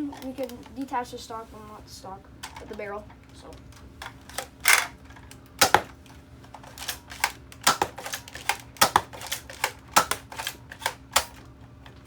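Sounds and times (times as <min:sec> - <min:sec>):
toy blaster firing foam darts: 0:05.6 - 0:06.0, 0:06.7 - 0:11.4.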